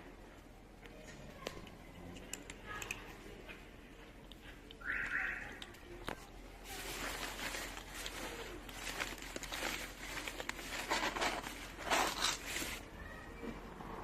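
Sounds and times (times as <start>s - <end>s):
small clicks: 1.4s - 3.1s
rustling and crinkling: 5.4s - 14.0s.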